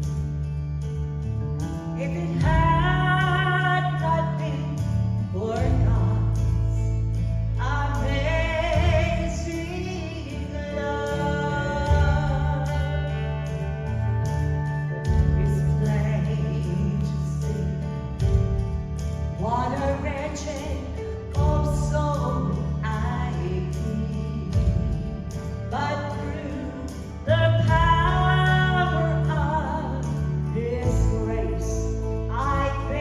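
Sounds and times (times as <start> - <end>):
bass notes: 0.0 - 33.0
women singing gospel: 7.6 - 13.3.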